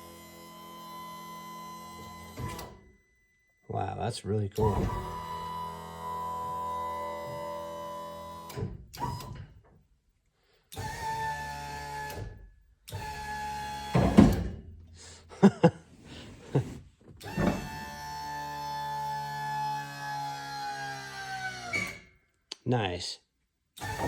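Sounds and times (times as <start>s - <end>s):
electric lift motor running: 0.0s - 2.8s, 4.6s - 8.6s, 17.2s - 22.0s, 23.8s - 24.0s.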